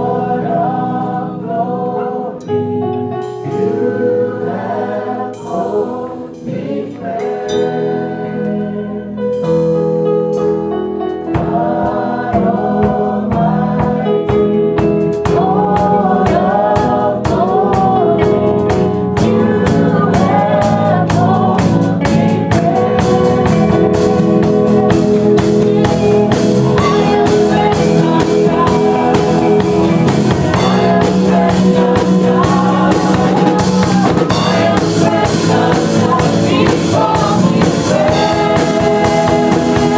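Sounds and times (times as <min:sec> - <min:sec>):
voices singing gospel: 0:00.0 - 0:02.7, 0:03.3 - 0:09.4, 0:11.2 - 0:39.9
band playing: 0:02.5 - 0:39.9
drum kit beat: 0:09.4 - 0:39.9.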